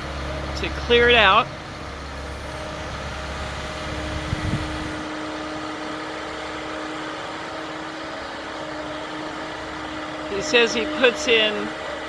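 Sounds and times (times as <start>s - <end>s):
heavy machinery engine rumble: 0.0s - 12.0s.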